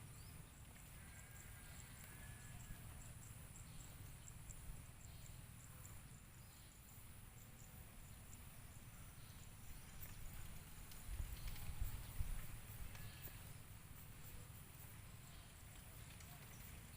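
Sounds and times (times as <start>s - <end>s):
faint steady hiss: 0.0s - 16.9s
faint high ticks: 1.7s - 2.2s, 10.0s - 13.6s.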